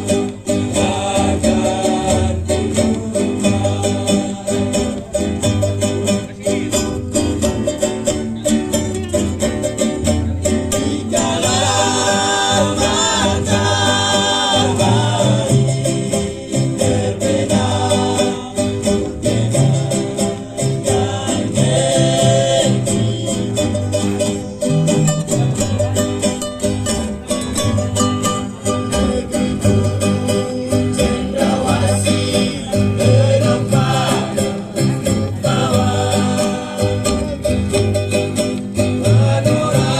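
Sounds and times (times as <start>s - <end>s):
acoustic string band playing: 0.0s - 39.9s
person singing: 0.4s - 5.6s, 10.7s - 25.5s, 28.6s - 38.4s.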